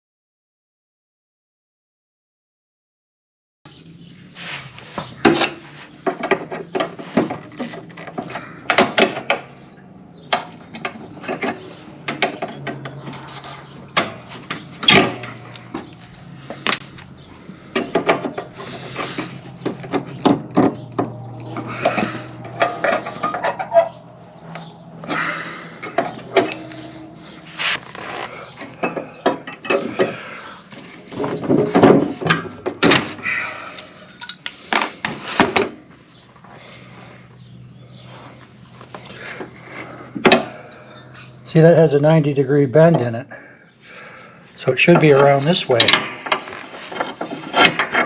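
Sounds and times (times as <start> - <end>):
metal parts and tools clinking: 10.3 - 35.2.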